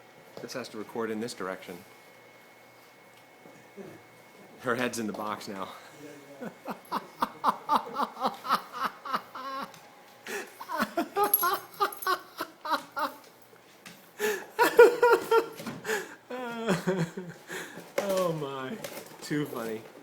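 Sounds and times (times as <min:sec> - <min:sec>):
person laughing hard: 0:06.4 - 0:13.3, 0:14.2 - 0:17.7.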